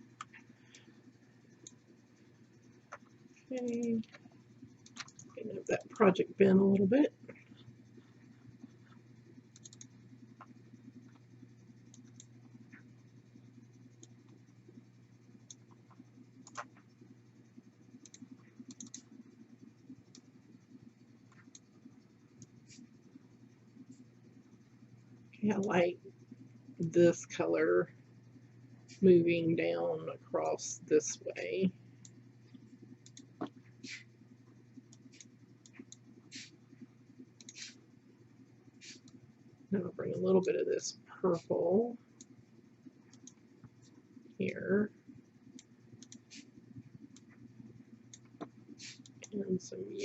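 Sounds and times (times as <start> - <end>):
low steady hum: 0.0 - 50.0
computer mouse and keyboard clicks: 2.7 - 6.1, 6.8 - 13.0, 15.4 - 17.0, 17.9 - 19.2, 21.2 - 22.9, 32.0 - 37.8, 38.8 - 39.2, 42.2 - 44.1, 45.4 - 50.0.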